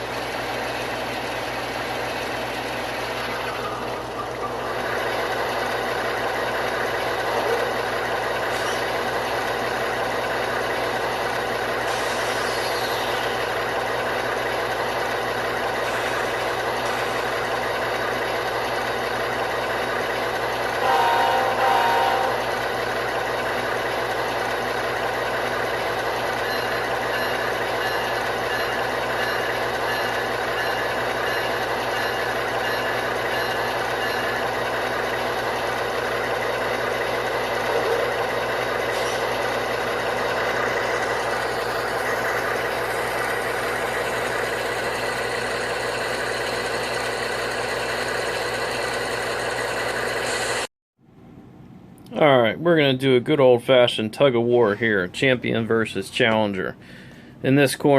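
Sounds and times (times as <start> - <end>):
model train diesel engine sound: 0.0 - 50.7, 52.0 - 57.9
horn blast of tones: 20.8 - 22.6.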